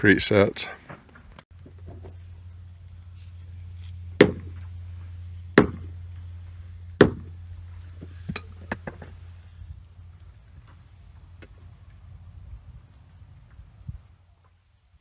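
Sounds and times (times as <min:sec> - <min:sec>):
steady low hum: 0:01.5 - 0:14.1
heavy knocks: 0:04.2 - 0:04.7, 0:05.6 - 0:06.0, 0:07.0 - 0:07.4.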